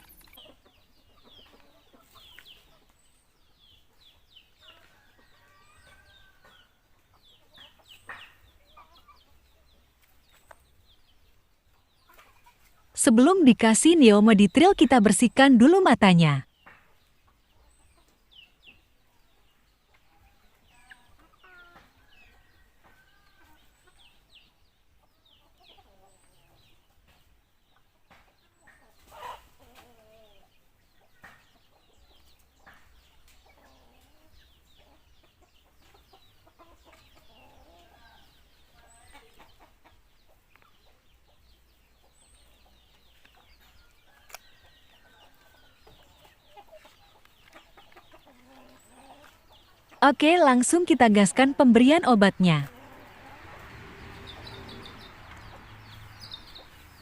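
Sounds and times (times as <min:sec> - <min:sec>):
faint fowl clucking: 0:28.6 - 0:32.9, 0:43.3 - 0:50.0.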